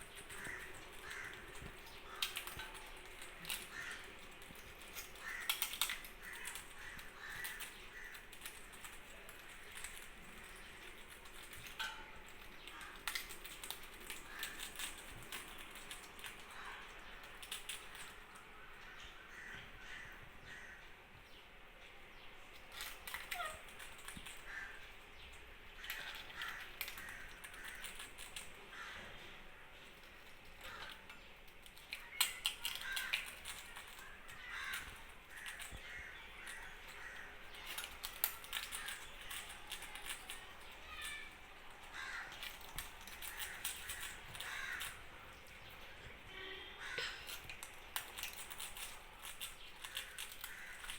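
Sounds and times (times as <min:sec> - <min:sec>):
parrots squawking: 0:00.1 - 0:04.3, 0:04.9 - 0:08.5, 0:23.0 - 0:24.8, 0:32.0 - 0:45.3.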